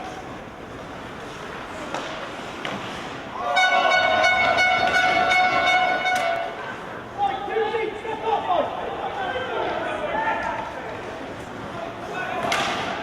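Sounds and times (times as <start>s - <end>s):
ice rink noise: 0.0s - 13.0s
electric horn blast: 3.6s - 6.5s.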